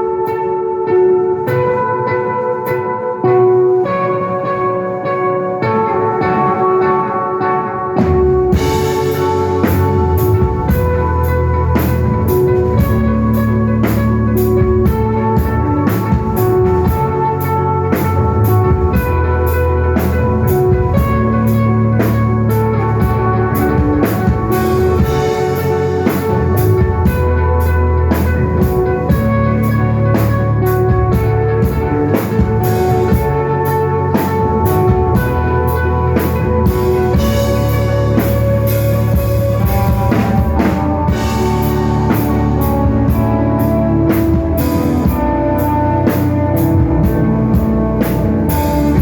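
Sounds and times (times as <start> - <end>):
bass notes: 0.0 - 49.0
electric guitar: 0.0 - 49.0
drum kit beat: 5.7 - 49.0.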